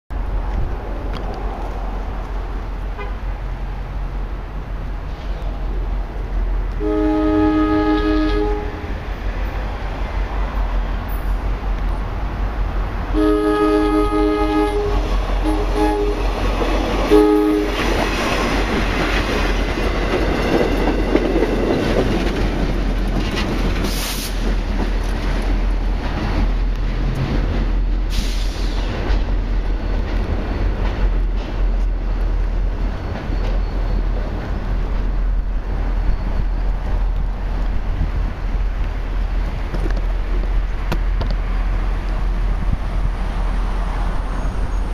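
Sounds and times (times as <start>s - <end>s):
train wheels on rails: 0.1s - 13.2s, 13.8s - 44.9s
train horn blasts: 2.9s - 3.3s, 6.7s - 9.0s, 13.1s - 16.3s, 17.0s - 17.8s.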